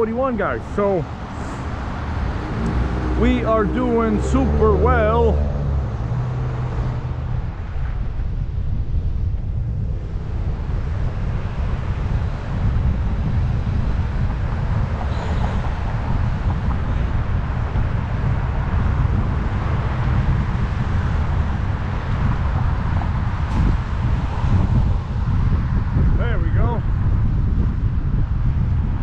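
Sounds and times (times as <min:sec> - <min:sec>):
road traffic: 0:00.0 - 0:29.0
wind buffeting microphone: 0:00.0 - 0:29.0.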